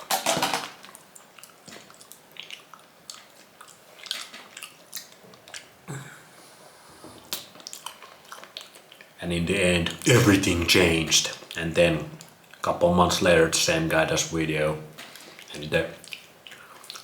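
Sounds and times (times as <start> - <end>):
person chewing raw meat: 0.9 - 5.8, 7.3 - 9.2, 15.1 - 17.0.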